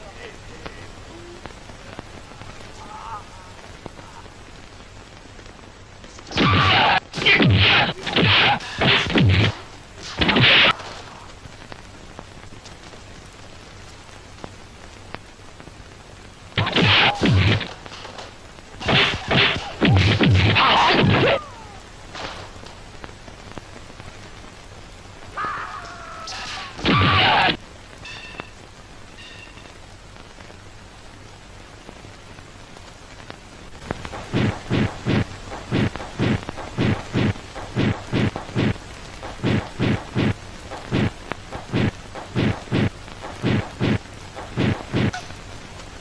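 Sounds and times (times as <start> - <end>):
steady hiss: 0.0 - 46.0
punch and kick hits: 6.3 - 10.7, 16.6 - 17.7, 18.8 - 21.2, 34.1 - 45.2
sharp whack sound effect: 34.2 - 45.3.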